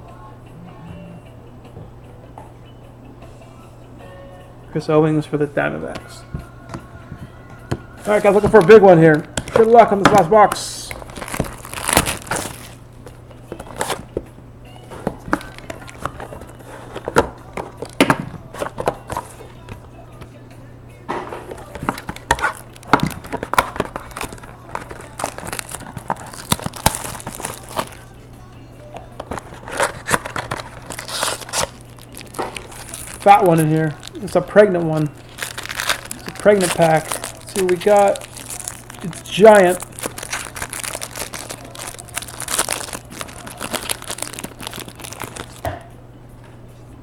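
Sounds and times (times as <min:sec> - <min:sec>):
card packaging crinkling: 0:08.0 - 0:14.2, 0:15.0 - 0:19.8, 0:21.4 - 0:28.1, 0:29.0 - 0:45.7.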